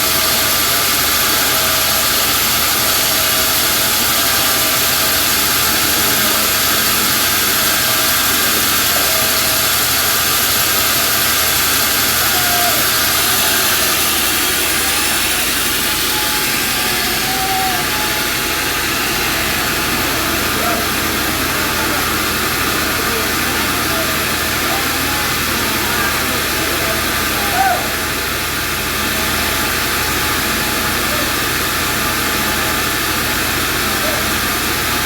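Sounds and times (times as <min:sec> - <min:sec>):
band sawmill running: 0:00.0 - 0:35.0.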